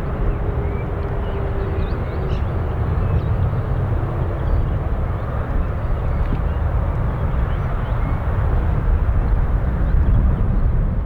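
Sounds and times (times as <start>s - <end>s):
jet airliner rumble: 0.0s - 11.0s.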